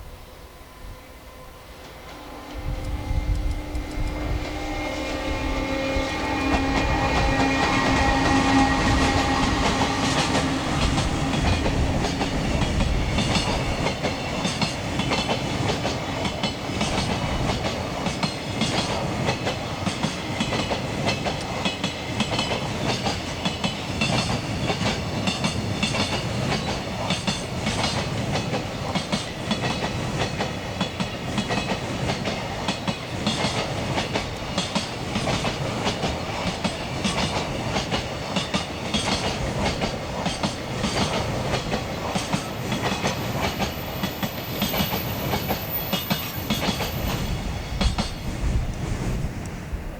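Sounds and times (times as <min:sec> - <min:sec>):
freight train rumble: 0:00.0 - 0:49.9
train wheels clicking over rail joints: 0:01.7 - 0:49.6.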